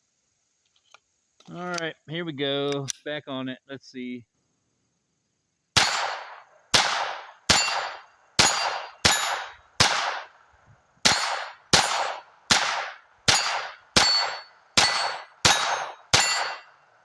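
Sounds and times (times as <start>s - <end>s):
pistol shots with ringing tail: 5.8s - 10.4s, 11.0s - 16.9s.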